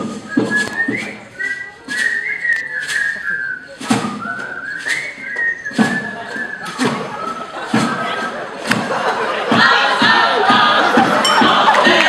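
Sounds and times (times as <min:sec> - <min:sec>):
person whistling a melody: 0:00.0 - 0:08.4
percussion beat: 0:00.0 - 0:12.0.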